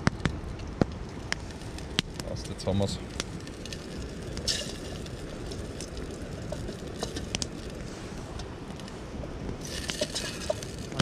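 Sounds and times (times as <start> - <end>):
campfire crackling and popping: 0.0 - 11.0
steady low rumble: 0.0 - 11.0.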